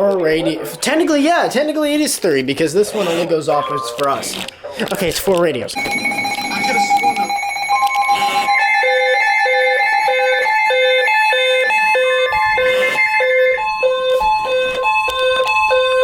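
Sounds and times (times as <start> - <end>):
steady alert tone: 5.8 - 15.3
two-note alternating beep: 5.8 - 16.0.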